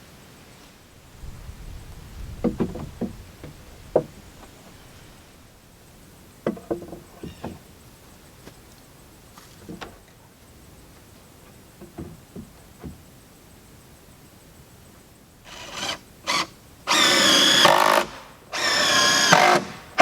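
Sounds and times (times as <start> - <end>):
wood knocking on wood: 2.2 - 4.9, 6.4 - 7.6.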